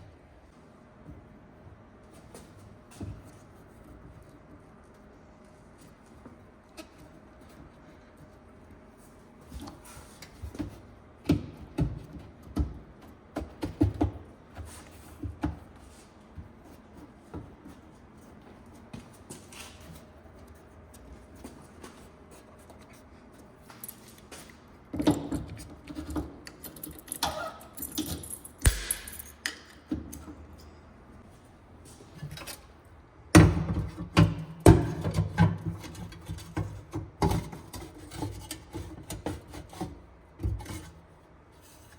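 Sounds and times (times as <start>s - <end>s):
metal tools clinking and knocking: 26.5s - 29.9s.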